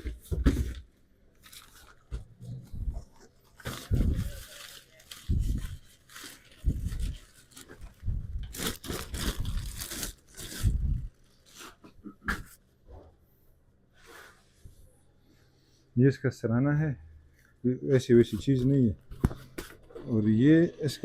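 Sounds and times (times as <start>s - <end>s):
cardboard and plastic tearing: 3.5s - 10.9s.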